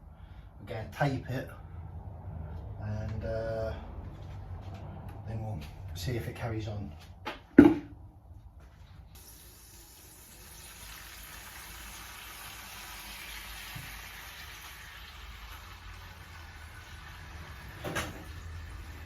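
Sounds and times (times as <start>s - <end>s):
sharp knock: 7.6s - 7.9s
water running from a tap: 9.2s - 19.0s.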